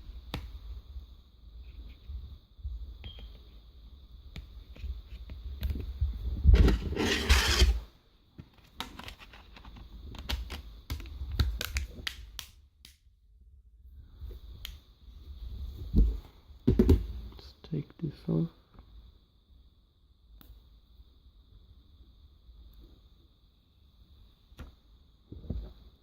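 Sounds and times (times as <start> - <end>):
rustling scrape: 6.3 - 7.9
small plastic clicks: 8.6 - 12.3.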